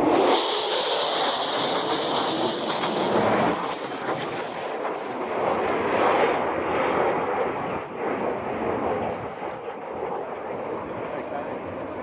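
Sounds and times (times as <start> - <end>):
fighter jet passing: 0.0 - 12.0.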